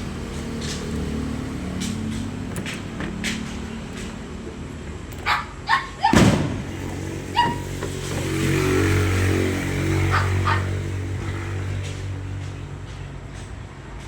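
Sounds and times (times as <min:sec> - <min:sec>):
low engine hum: 0:00.0 - 0:14.0
dog barking: 0:05.2 - 0:06.2, 0:07.3 - 0:07.7, 0:10.0 - 0:10.8.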